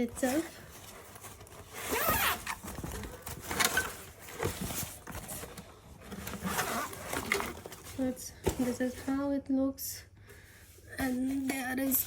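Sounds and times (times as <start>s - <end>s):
fabric rustling: 0.0s - 9.3s
zipper being pulled open: 1.7s - 2.5s.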